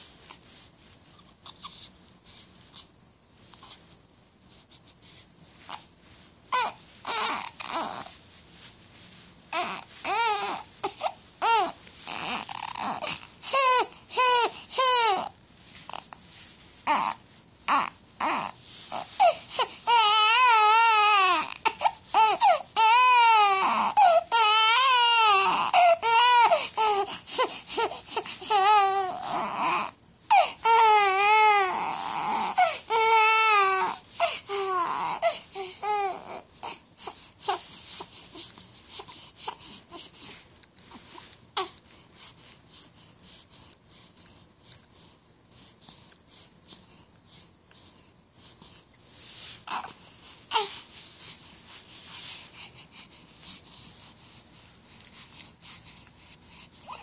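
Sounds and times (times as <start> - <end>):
baby crying: 6.5 - 8.1, 9.5 - 15.3, 16.9 - 36.5, 49.7 - 49.9.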